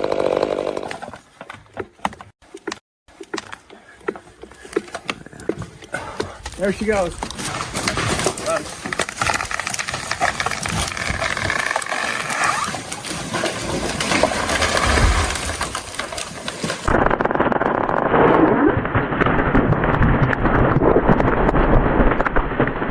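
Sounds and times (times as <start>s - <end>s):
branches cracking and snapping: 6.4s - 18.1s
rumbling crackling noise: 6.4s - 22.9s.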